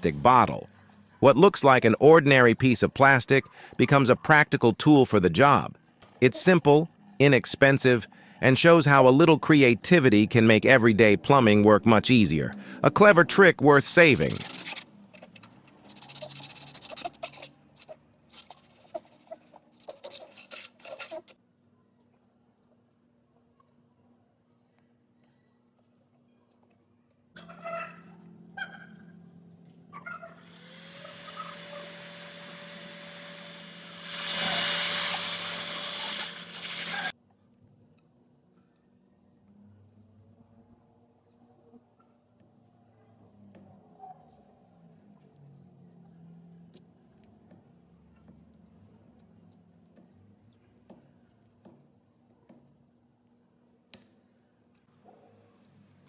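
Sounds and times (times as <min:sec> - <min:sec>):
electric power tool running: 0:30.4 - 0:37.1.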